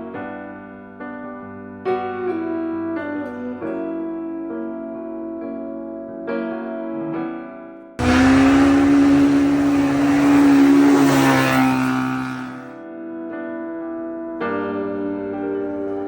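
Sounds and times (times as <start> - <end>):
loud rush of noise: 8.0 - 12.7
off-road vehicle engine revving: 8.0 - 12.7.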